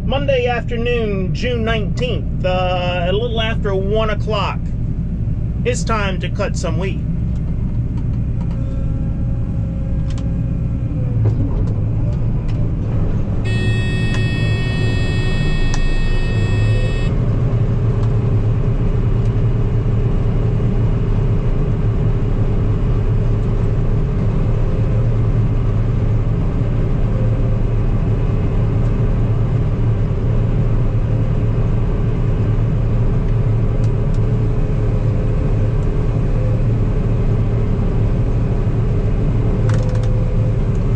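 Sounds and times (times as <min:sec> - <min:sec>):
combine harvester engine running: 0:00.0 - 0:26.9
high electronic tone: 0:13.4 - 0:17.1.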